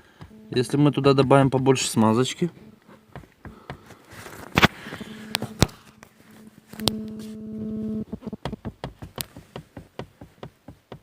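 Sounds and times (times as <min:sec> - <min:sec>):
steady buzzing tone: 0:00.0 - 0:08.9
car seat knocking on rails: 0:03.1 - 0:03.9, 0:08.1 - 0:11.0.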